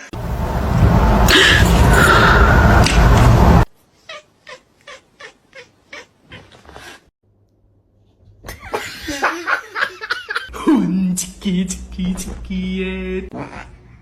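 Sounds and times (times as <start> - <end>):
loud harsh noise: 0.2 - 3.6.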